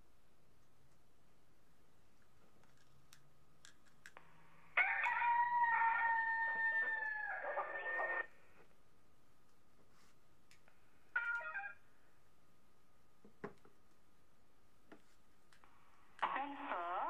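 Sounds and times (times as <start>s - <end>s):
recorded rooster crow from speaker: 4.8s - 8.3s.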